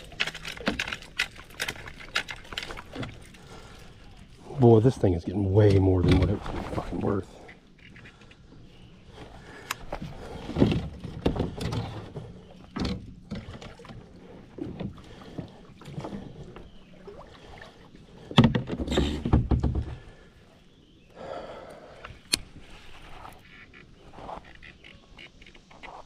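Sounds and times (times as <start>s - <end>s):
knocks and rustling on kayak: 0.0s - 20.4s.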